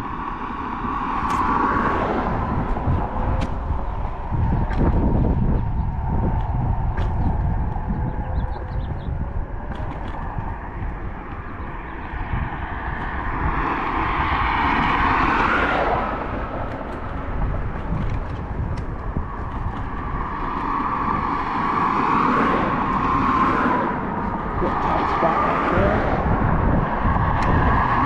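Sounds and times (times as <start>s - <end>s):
vehicles passing: 0.0s - 28.0s
wind buffeting microphone: 0.0s - 28.0s.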